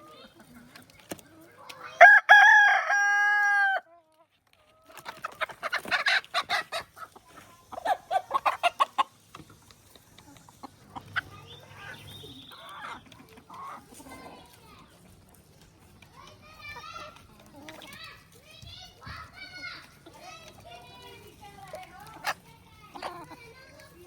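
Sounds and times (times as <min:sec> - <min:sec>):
chickens clucking: 0:00.0 - 0:24.0
rooster crowing: 0:02.0 - 0:03.9.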